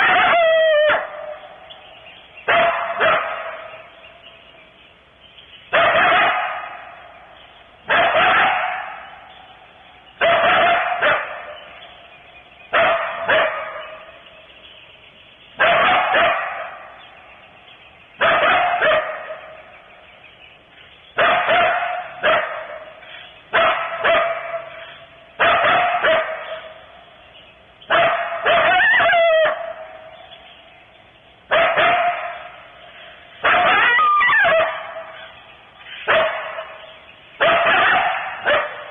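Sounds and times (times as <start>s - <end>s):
coyote yip-howl: 0.0s - 1.8s, 2.4s - 3.9s, 5.7s - 7.1s, 7.9s - 9.3s, 10.2s - 11.8s, 12.7s - 14.2s, 15.6s - 17.0s, 18.2s - 19.6s, 21.2s - 26.9s, 27.9s - 30.2s, 31.5s - 32.6s, 33.4s - 38.9s
coyote barking: 0.0s - 4.6s, 5.6s - 14.6s, 15.5s - 20.2s, 21.1s - 30.7s, 31.4s - 38.9s.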